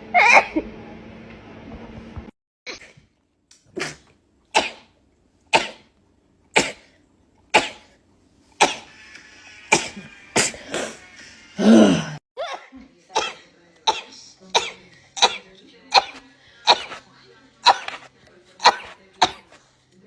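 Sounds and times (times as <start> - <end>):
person sneezing: 3.7 - 4.9, 5.5 - 5.9, 6.6 - 6.9, 7.5 - 7.9, 8.6 - 8.9, 9.7 - 11.0.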